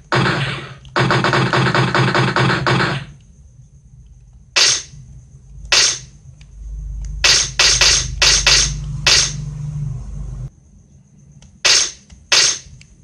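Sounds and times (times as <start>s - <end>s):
low hum: 2.3s - 11.4s.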